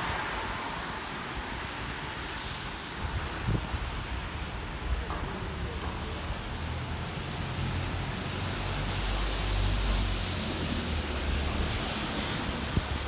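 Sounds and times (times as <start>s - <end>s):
tyre hiss on wet road: 0.0s - 4.8s, 7.0s - 13.0s
traffic engine rumble: 4.0s - 13.0s.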